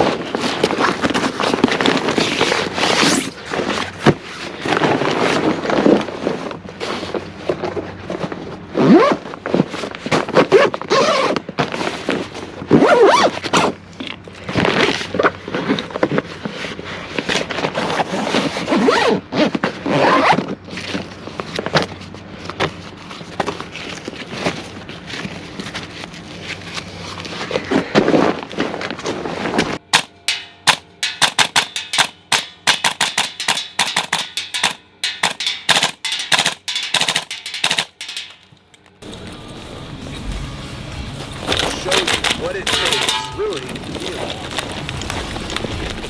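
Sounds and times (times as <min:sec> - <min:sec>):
gear rasping and scraping: 0:22.8 - 0:46.0.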